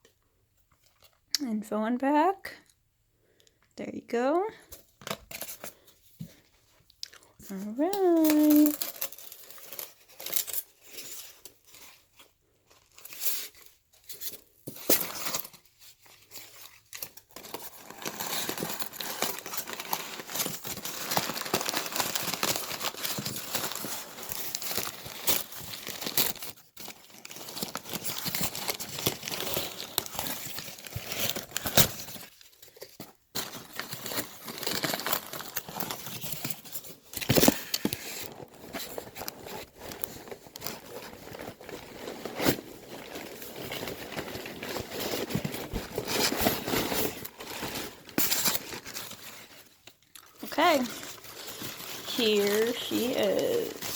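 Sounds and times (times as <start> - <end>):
packaging crinkling and tearing: 4.9 - 53.9.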